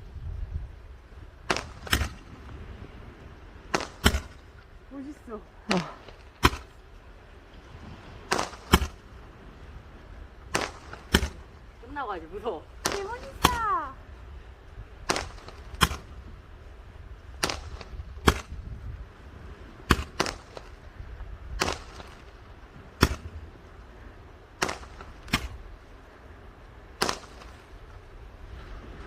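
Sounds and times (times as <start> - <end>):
steady low rumble: 0.0 - 29.0
fireworks bangs: 12.8 - 13.8, 15.0 - 16.0, 17.4 - 18.6, 19.9 - 20.8.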